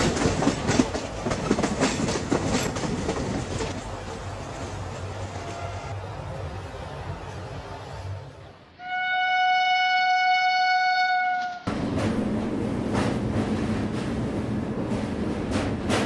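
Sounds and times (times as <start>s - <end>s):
wheels clacking over rail joints: 0.0s - 5.2s, 11.7s - 16.0s
train rumbling on track: 0.0s - 16.0s
locomotive horn blast: 5.3s - 6.0s, 8.8s - 11.7s.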